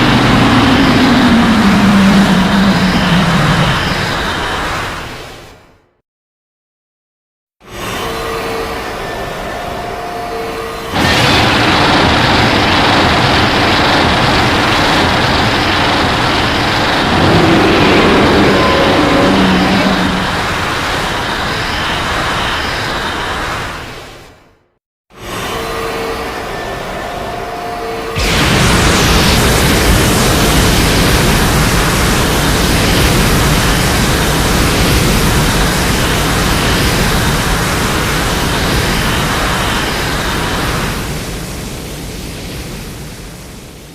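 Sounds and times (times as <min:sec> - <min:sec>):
monster roar rushing noise: 0:00.0 - 0:03.8, 0:16.9 - 0:21.2
low rumble: 0:00.0 - 0:04.4, 0:11.0 - 0:21.4
loud dense rushing noise: 0:00.0 - 0:05.7, 0:10.9 - 0:24.5, 0:28.2 - 0:43.9
faint gliding tones: 0:16.9 - 0:21.0.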